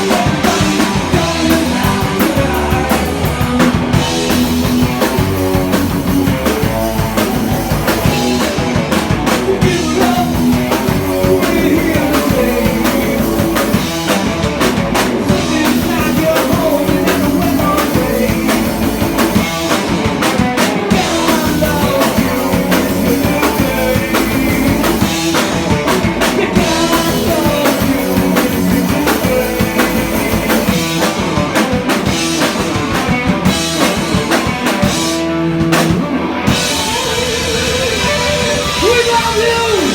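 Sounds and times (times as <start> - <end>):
person singing: 0.0 - 4.3, 9.3 - 14.0, 15.2 - 19.7, 20.6 - 25.4, 26.2 - 31.5
drum kit: 0.0 - 39.9
electric guitars: 0.0 - 39.9.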